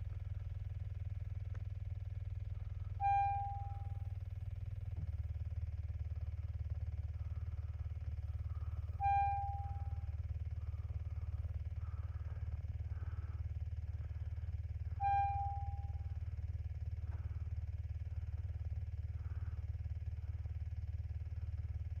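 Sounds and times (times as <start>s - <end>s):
engine droning: 0.0s - 22.0s
dashboard chime tones: 3.0s - 4.0s, 9.0s - 10.0s.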